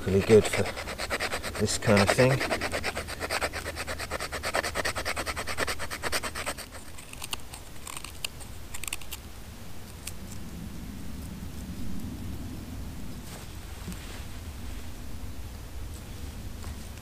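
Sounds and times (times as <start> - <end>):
knife scraping wood: 0.0 - 9.2.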